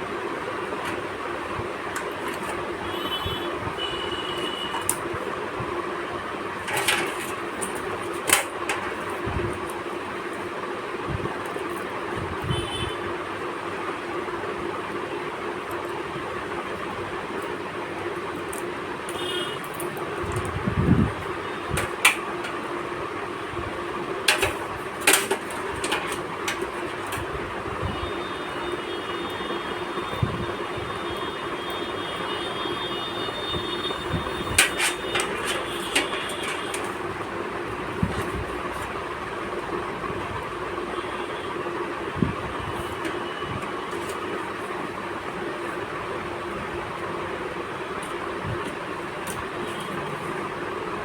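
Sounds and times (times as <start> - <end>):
steady background noise: 0.0 - 51.0
computer parts clicking and knocking: 6.6 - 9.2, 24.2 - 30.4, 32.3 - 37.1.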